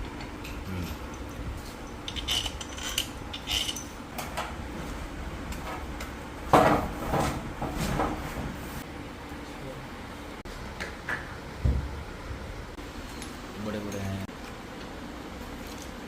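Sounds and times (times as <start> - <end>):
metal tools clinking: 0.4 - 4.0.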